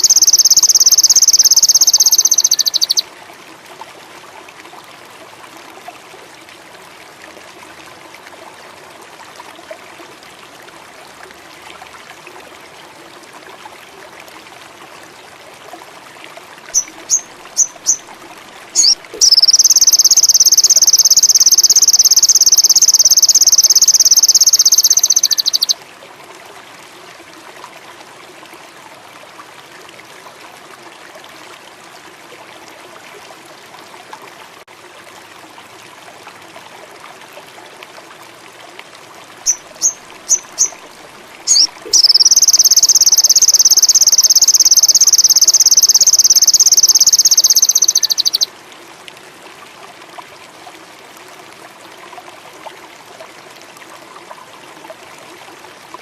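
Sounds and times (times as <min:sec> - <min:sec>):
insects: 0:00.0 - 0:03.0, 0:18.8 - 0:25.8, 0:41.5 - 0:48.5
sunbird chirping and trilling: 0:00.0 - 0:03.0, 0:16.8 - 0:18.0, 0:18.8 - 0:25.8, 0:39.5 - 0:40.8, 0:41.5 - 0:48.5
faint water ambience: 0:00.0 - 0:56.0.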